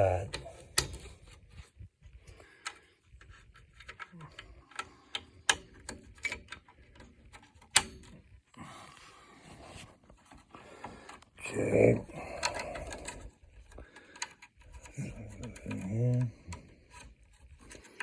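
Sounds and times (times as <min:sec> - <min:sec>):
plastic plug clicks and rattles: 0:00.0 - 0:01.4, 0:02.6 - 0:08.3.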